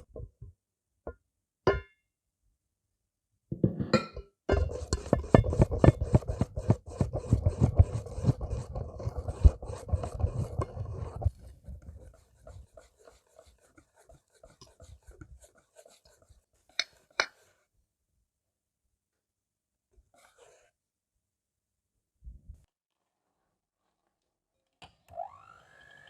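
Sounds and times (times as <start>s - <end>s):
utensil stirring and scraping bowl: 4.5s - 17.4s.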